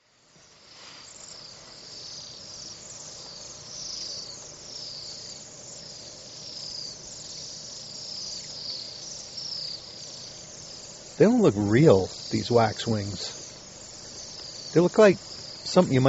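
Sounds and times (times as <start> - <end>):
flock of birds trilling: 6.4 - 16.0.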